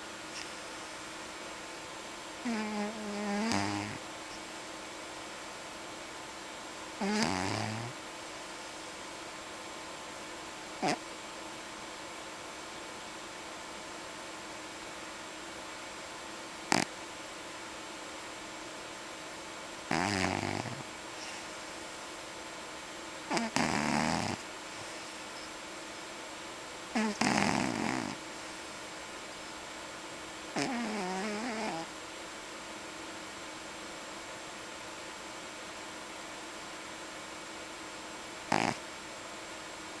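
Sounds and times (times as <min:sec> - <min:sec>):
steady hiss: 0:00.0 - 0:40.0
cat snoring: 0:02.4 - 0:04.0, 0:07.0 - 0:08.0, 0:10.8 - 0:11.0, 0:16.7 - 0:16.9, 0:19.9 - 0:21.4, 0:23.3 - 0:25.1, 0:26.9 - 0:28.2, 0:30.5 - 0:31.9, 0:38.5 - 0:38.8.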